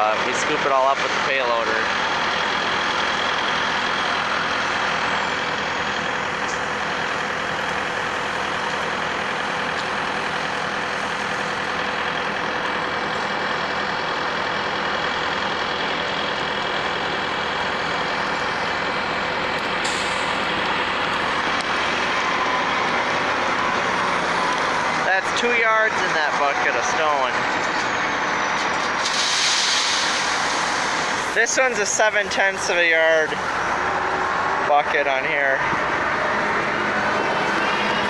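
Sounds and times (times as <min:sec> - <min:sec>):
skid steer engine running: 0:00.0 - 0:38.0.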